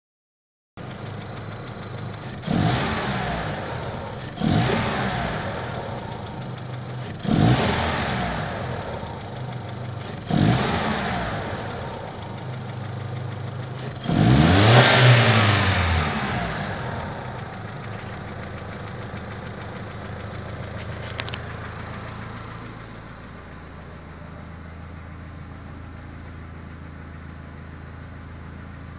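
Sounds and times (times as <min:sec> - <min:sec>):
car engine idling and revving: 0:00.8 - 0:28.9.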